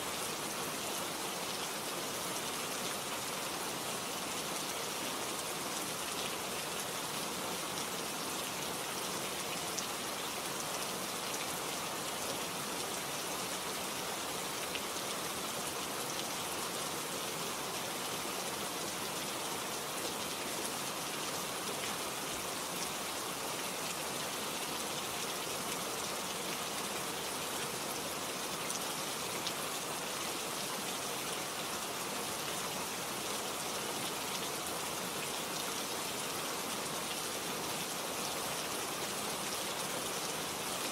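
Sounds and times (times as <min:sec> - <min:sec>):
rain hissing on a surface: 0:00.0 - 0:40.9.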